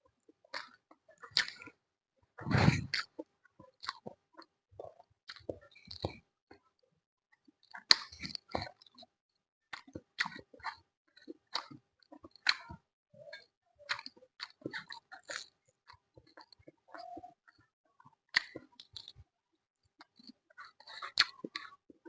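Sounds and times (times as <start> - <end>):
person chewing crisp food: 0.5 - 1.8, 2.4 - 6.2, 7.6 - 9.1, 9.7 - 12.8, 13.4 - 19.2, 19.9 - 22.0
wet mouth sounds: 2.4 - 3.1, 20.0 - 21.8.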